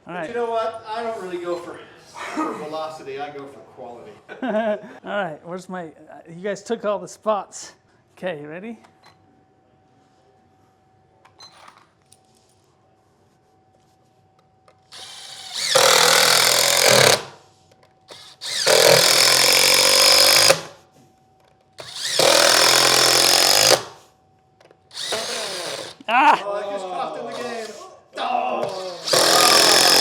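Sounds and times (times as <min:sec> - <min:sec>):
power driver running screws: 0:14.8 - 0:17.4, 0:18.1 - 0:20.8, 0:21.8 - 0:24.0, 0:24.9 - 0:26.1, 0:27.3 - 0:27.8, 0:28.6 - 0:30.0.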